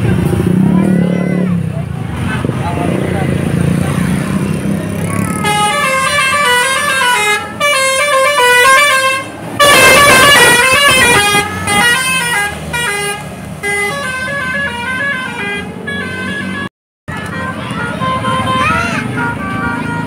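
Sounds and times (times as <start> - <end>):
bus horn playing a tune: 5.3 - 20.0.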